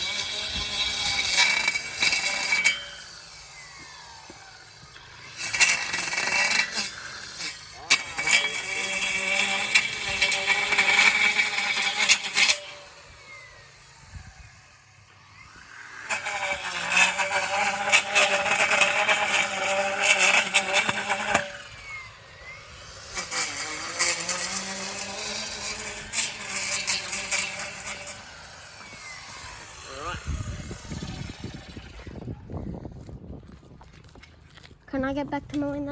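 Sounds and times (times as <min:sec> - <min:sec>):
edger motor whining: 0:00.0 - 0:33.2
blade ticking on lawn edge: 0:15.6 - 0:21.6, 0:23.0 - 0:30.2.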